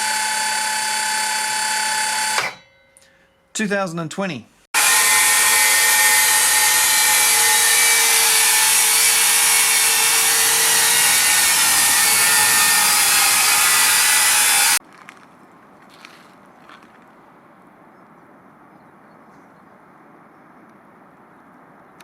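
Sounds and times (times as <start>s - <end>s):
circular saw whining: 0.0s - 3.1s, 4.8s - 14.8s.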